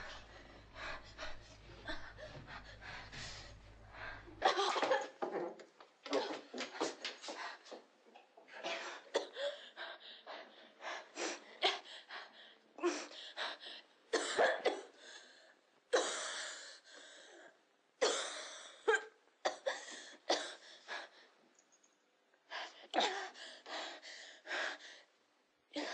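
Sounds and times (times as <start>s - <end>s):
women coughing: 14.2s - 15.0s, 18.0s - 20.6s.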